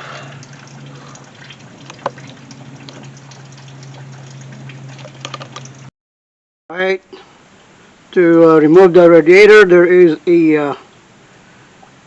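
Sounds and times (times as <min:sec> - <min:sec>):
coolant pouring and trickling: 0:00.0 - 0:05.9.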